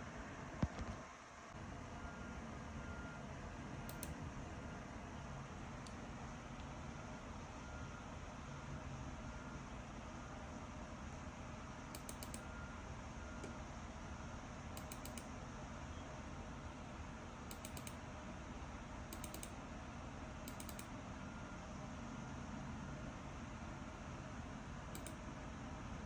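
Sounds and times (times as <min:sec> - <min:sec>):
steady background hum: 0:00.0 - 0:26.0
computer keyboard clicks: 0:03.9 - 0:04.2, 0:11.9 - 0:12.5, 0:14.8 - 0:15.3, 0:17.5 - 0:18.0, 0:19.1 - 0:19.6, 0:20.4 - 0:20.9, 0:24.9 - 0:25.2.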